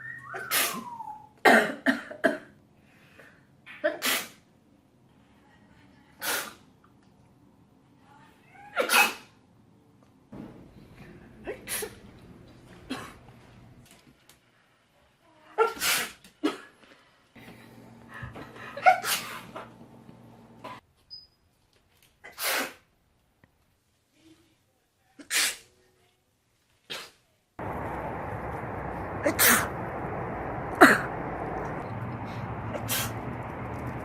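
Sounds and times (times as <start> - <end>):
woman sneezing: 6.2 - 6.6, 8.8 - 9.3, 11.4 - 12.0, 15.6 - 16.7, 18.8 - 19.5, 22.2 - 22.8, 25.2 - 25.7
background hum: 16.8 - 21.3, 27.6 - 34.0.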